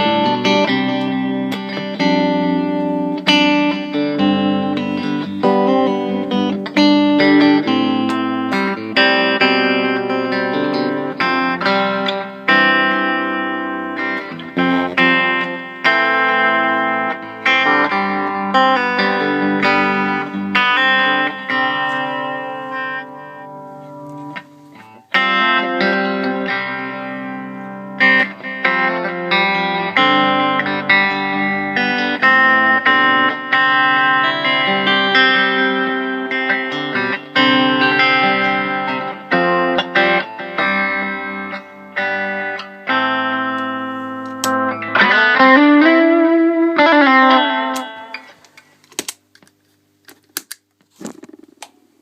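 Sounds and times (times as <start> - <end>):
electric guitar chords and notes: 0.0 - 52.0.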